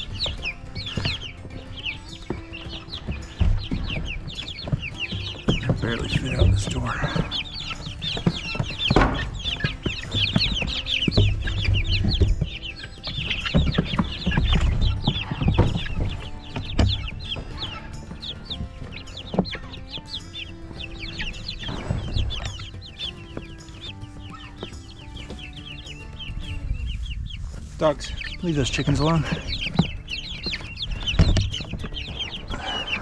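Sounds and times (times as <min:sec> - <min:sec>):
chicks peeping: 0:00.0 - 0:33.0
low rumbling thuds: 0:00.0 - 0:33.0.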